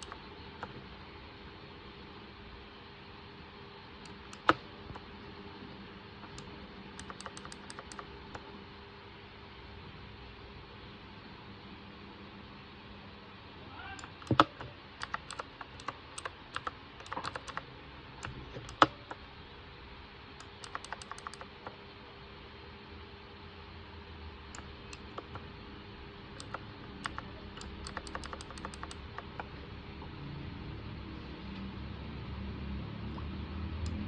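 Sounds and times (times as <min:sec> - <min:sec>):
mechanical keyboard key clicks: 0:07.0 - 0:08.0, 0:14.0 - 0:17.6, 0:18.2 - 0:19.2, 0:20.4 - 0:21.6, 0:26.4 - 0:29.5.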